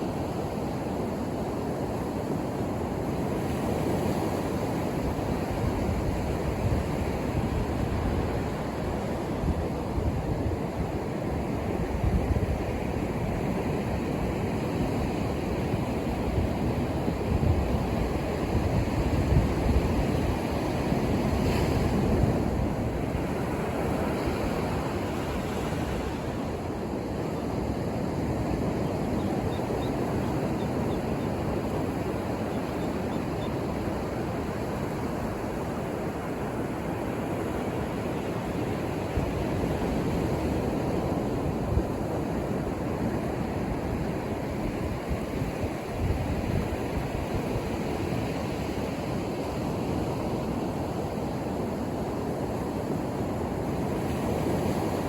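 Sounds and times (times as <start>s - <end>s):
ocean waves breaking: 18.0s - 55.0s.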